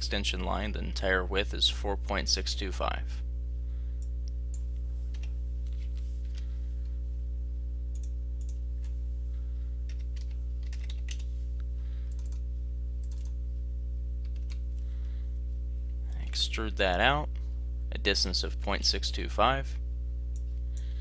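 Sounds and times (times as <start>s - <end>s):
low electrical hum: 0.0s - 21.0s
computer keyboard typing: 5.1s - 5.3s, 9.9s - 11.3s, 12.1s - 12.4s, 13.0s - 13.4s, 14.2s - 14.6s.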